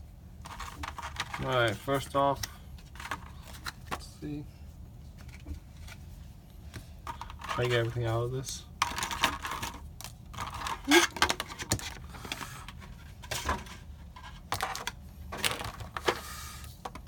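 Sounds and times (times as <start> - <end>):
packaging clicks and knocks: 8.8 - 16.2
packaging rustling: 8.8 - 16.3.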